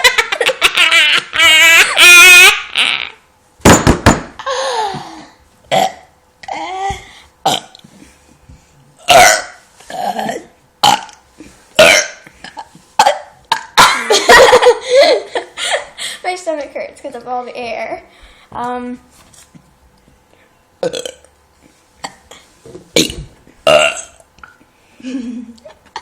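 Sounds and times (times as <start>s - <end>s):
forced burps: 5.7s - 6.6s, 7.4s - 7.8s, 9.0s - 11.2s, 11.8s - 13.9s, 20.8s - 21.3s, 22.0s - 24.3s.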